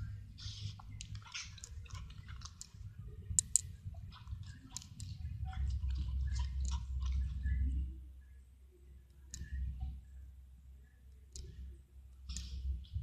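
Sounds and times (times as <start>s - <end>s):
sharp clicks: 3.4s - 3.7s.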